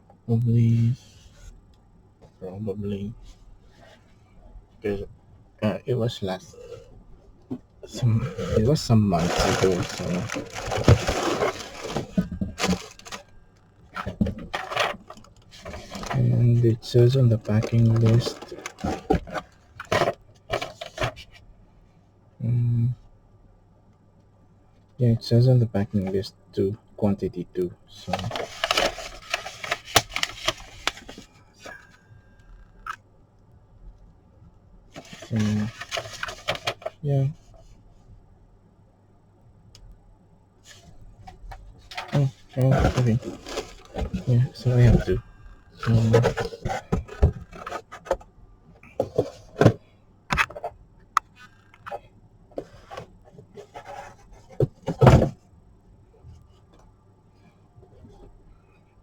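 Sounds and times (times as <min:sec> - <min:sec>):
paper packaging rustling: 0:08.0 - 0:13.3, 0:14.0 - 0:21.2, 0:28.0 - 0:31.8, 0:35.0 - 0:37.0, 0:41.9 - 0:48.2.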